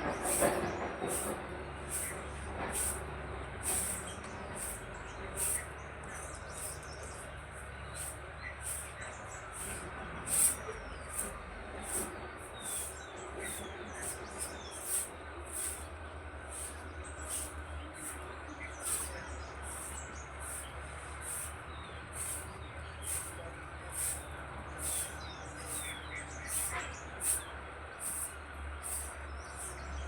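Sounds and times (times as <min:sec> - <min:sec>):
high bird chirp: 0:12.6 - 0:15.8.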